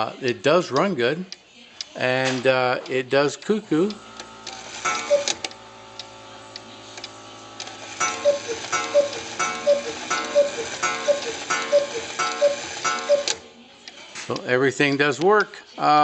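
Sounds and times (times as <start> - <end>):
clock ticking: 4.8 - 7.2, 8.0 - 13.4
two-note cuckoo calls: 4.9 - 5.4, 8.0 - 13.4.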